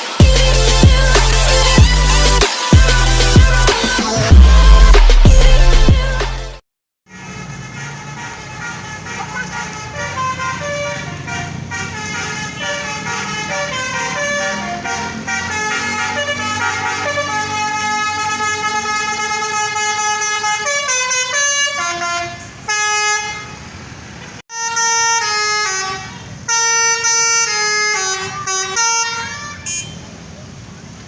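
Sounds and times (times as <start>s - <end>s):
bus air horn playing notes: 7.1s - 23.8s, 24.5s - 30.0s
engine rumble: 7.3s - 20.9s.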